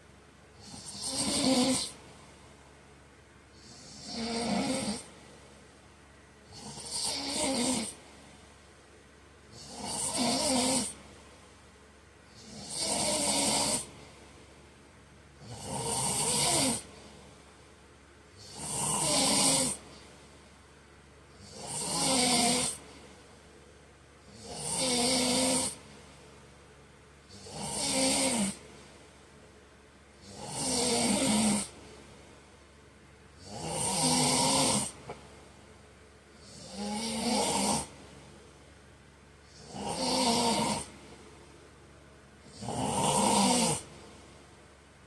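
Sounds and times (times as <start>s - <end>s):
man snoring: 0.6s - 2.0s, 3.6s - 5.1s, 6.5s - 8.0s, 9.5s - 11.0s, 12.3s - 14.0s, 15.4s - 17.0s, 18.4s - 20.0s, 21.4s - 22.9s, 24.2s - 25.9s, 27.3s - 28.6s, 30.2s - 31.8s, 33.4s - 35.2s, 36.4s - 38.0s, 39.5s - 41.0s, 42.4s - 43.9s
quiet breathing: 9.4s - 21.7s.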